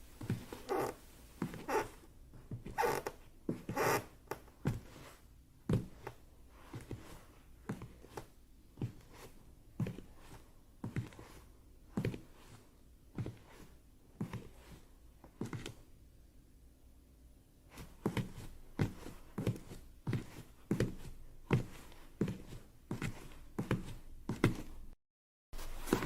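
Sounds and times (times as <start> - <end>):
footsteps walking: 0.2 - 1.8, 25.6 - 26.0.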